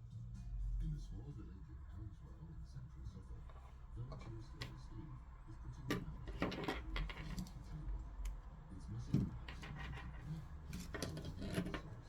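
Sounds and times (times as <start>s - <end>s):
small parts and tools clicking: 9.1s - 11.9s.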